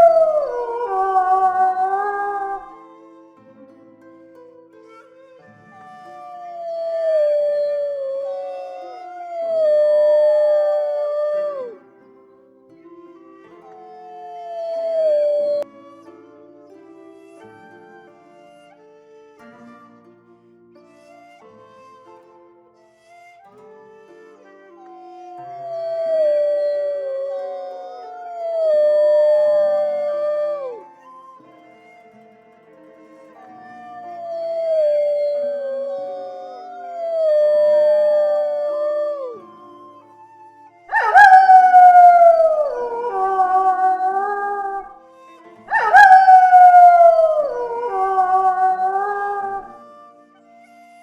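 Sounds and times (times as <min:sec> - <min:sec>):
wolf howling: 0:00.0 - 0:03.0, 0:06.1 - 0:11.8, 0:14.2 - 0:15.7, 0:25.2 - 0:31.3, 0:33.4 - 0:45.0, 0:45.7 - 0:50.2
soft music with held notes: 0:00.0 - 0:51.0.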